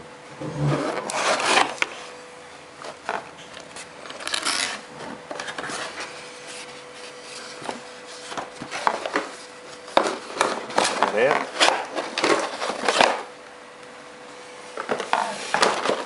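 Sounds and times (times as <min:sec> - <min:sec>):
cardboard box scraping and rubbing: 0:00.4 - 0:02.1.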